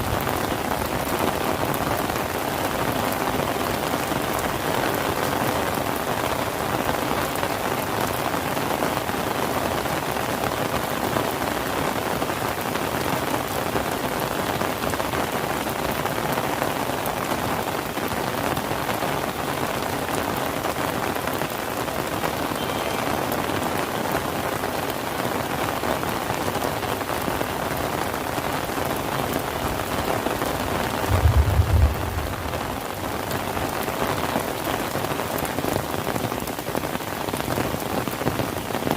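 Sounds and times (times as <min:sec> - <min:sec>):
steady rain pattering: 0:00.0 - 0:38.9
low thump: 0:31.1 - 0:33.2.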